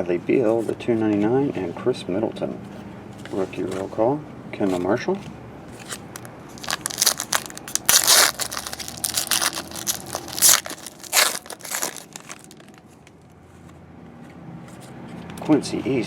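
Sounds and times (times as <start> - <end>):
plastic wrapper tearing and crinkling: 6.1 - 13.0.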